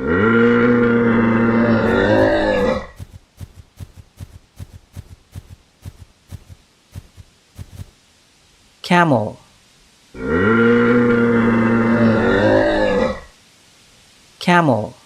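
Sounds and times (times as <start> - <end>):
rhinoceros bellowing: 0.0 - 3.0
rhinoceros huffing: 1.8 - 5.5.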